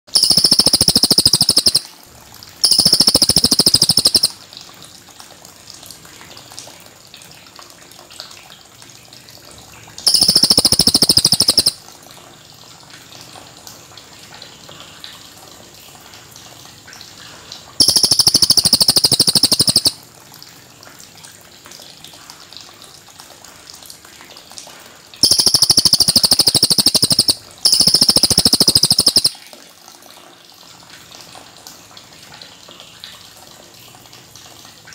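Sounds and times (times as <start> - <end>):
bird trilling song: 0.2 - 1.9, 2.6 - 4.4, 10.1 - 11.8, 17.8 - 20.0, 25.2 - 29.4
faint steady hiss: 0.2 - 1.9, 2.6 - 4.4, 10.0 - 11.8, 17.8 - 20.0, 25.2 - 29.4.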